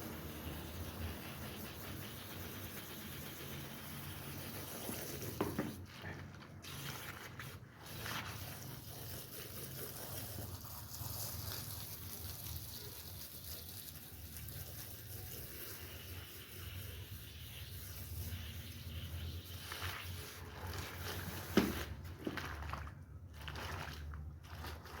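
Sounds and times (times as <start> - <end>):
knock: 5.4 - 5.8.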